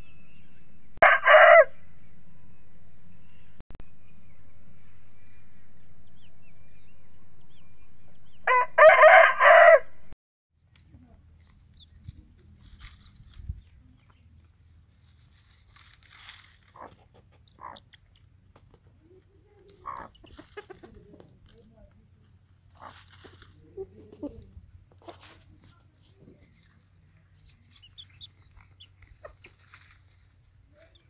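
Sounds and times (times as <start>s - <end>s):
rooster crowing: 1.0s - 1.8s, 8.4s - 10.0s.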